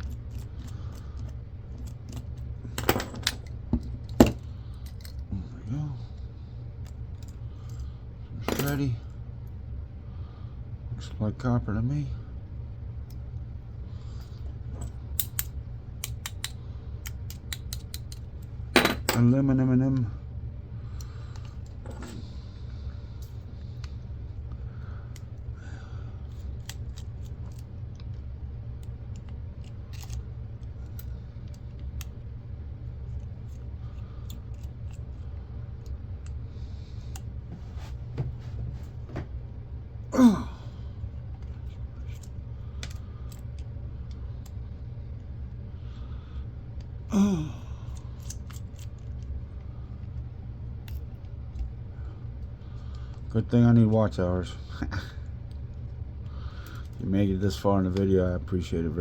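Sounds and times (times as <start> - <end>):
small parts and tools clicking: 0.0 - 5.3, 14.2 - 19.2, 26.3 - 28.2, 28.8 - 32.2, 33.1 - 35.2, 41.3 - 44.6, 47.8 - 49.3
low hum: 0.0 - 59.0
man sighing: 40.1 - 40.8, 47.1 - 48.0.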